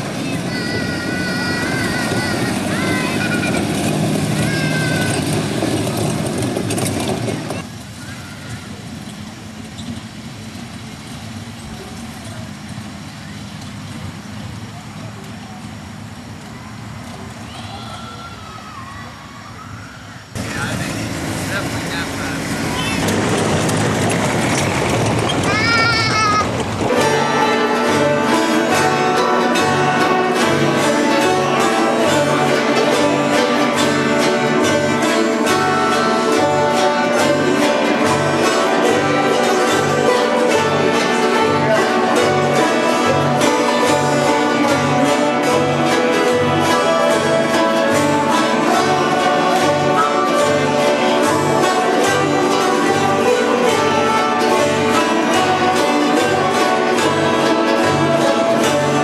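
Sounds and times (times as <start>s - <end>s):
fiddle: 0.0s - 6.2s, 25.4s - 59.0s
guitar: 0.0s - 7.7s, 20.4s - 59.0s
banjo: 26.8s - 59.0s.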